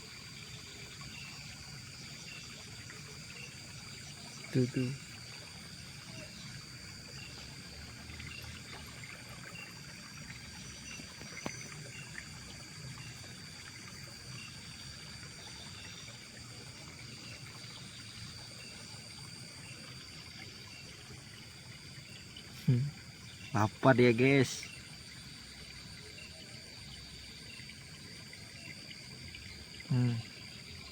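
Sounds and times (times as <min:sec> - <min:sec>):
insect trill: 0:00.0 - 0:30.9
water trickling: 0:00.0 - 0:30.9.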